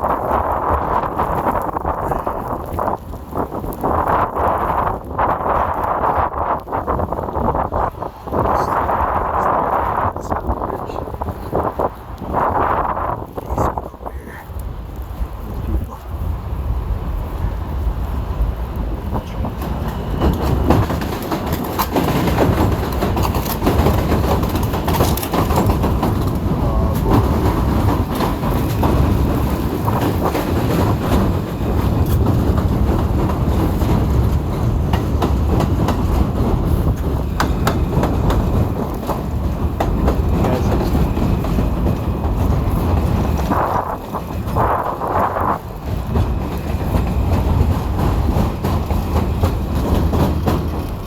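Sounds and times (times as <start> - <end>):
subway train clattering on tracks: 0.0 - 13.7, 16.1 - 51.0
wind buffeting microphone: 0.0 - 51.0.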